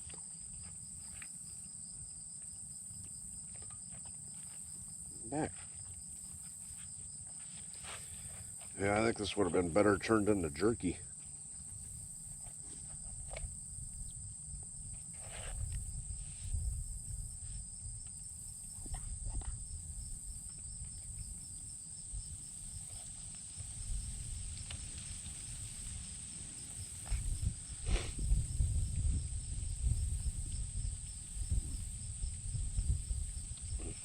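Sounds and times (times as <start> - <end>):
insects trilling: 0.0 - 34.0
pulsing insect chirp: 0.2 - 34.0.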